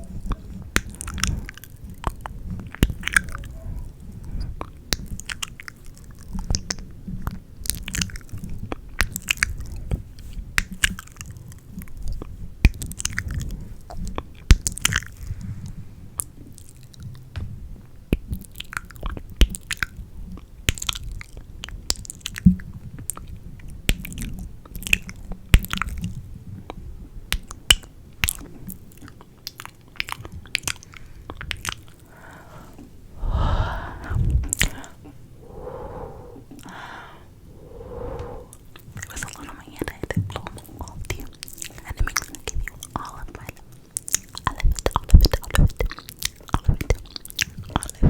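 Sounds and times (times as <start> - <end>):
breathy voiced sounds: 32.0 - 38.6.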